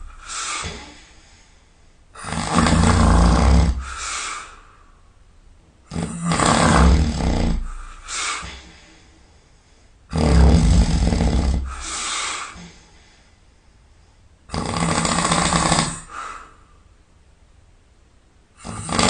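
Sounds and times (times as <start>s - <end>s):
person snoring: 0.0s - 1.1s, 2.2s - 4.6s, 5.9s - 8.7s, 10.1s - 12.8s, 14.5s - 16.5s, 18.6s - 19.0s
breathy exhale: 0.0s - 2.8s, 3.7s - 5.1s, 7.6s - 10.0s, 11.6s - 14.2s, 16.0s - 16.9s.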